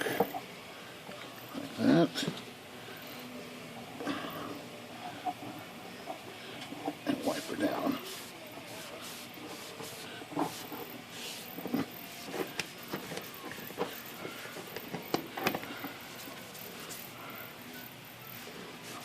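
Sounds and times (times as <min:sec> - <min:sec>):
towel scrubbing rubber roller: 0:07.0 - 0:17.3, 0:18.3 - 0:19.0.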